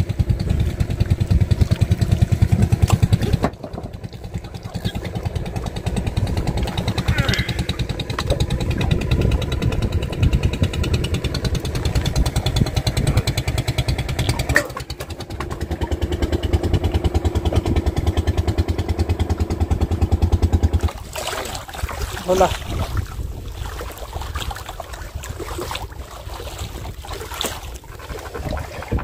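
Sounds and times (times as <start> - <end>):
boat engine running: 0.0 - 29.0.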